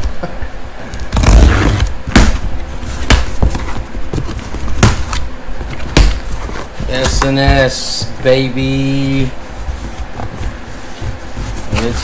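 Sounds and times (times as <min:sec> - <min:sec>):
scraping rustle: 0:06.2 - 0:12.0.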